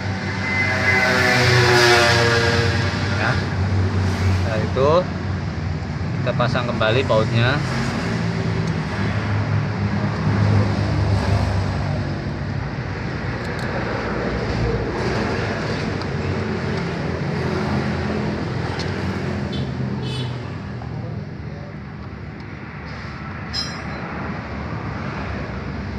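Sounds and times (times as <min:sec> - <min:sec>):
road traffic passing: 0:00.0 - 0:25.9.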